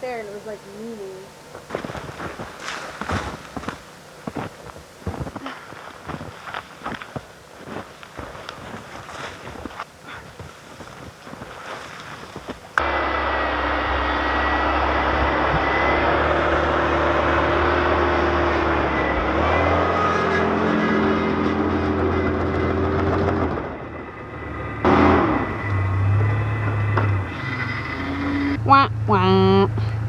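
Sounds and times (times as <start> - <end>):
truck engine straining under load: 1.4 - 30.0
engine revving: 12.8 - 30.0.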